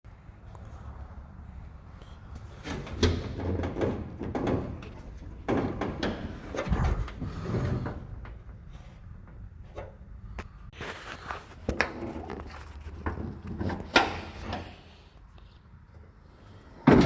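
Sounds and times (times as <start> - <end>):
knocks and clunk: 2.6 - 8.6, 16.8 - 17.0.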